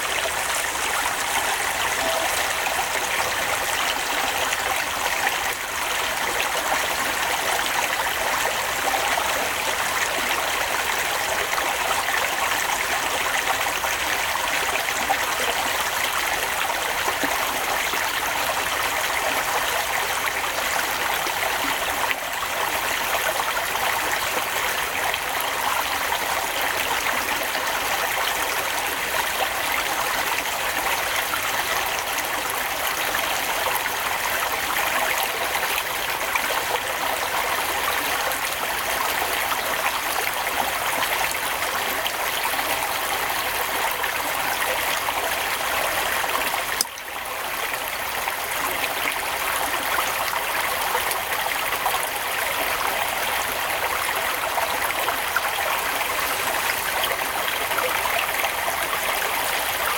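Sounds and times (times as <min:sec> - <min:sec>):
steady rushing hiss: 0:00.0 - 0:03.9.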